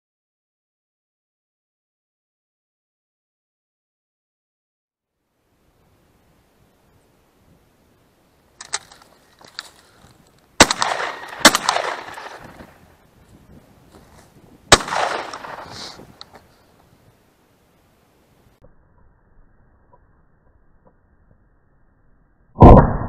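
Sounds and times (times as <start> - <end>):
shotgun shots with echo: 10.6 - 12.8, 14.7 - 16.0
faint sharp clicks: 15.2 - 16.9.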